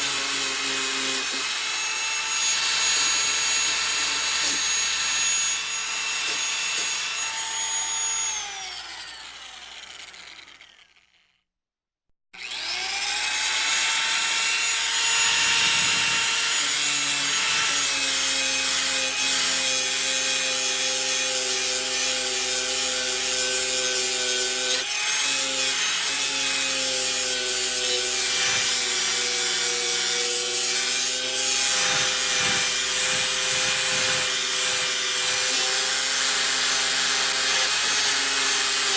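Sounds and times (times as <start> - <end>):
power tool whining: 0.0 - 11.4, 12.4 - 38.9
second power tool harsh noise: 14.6 - 17.8.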